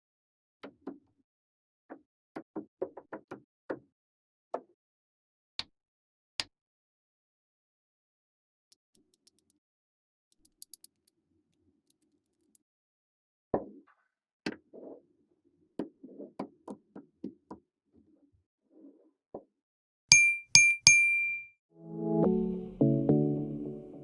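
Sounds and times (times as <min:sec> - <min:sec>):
magnetic balls clicking together: 0:10.4 - 0:11.0.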